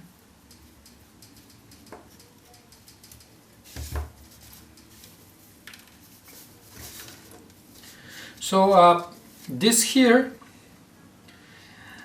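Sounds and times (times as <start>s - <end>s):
small parts clicking and rattling: 0.4s - 3.4s.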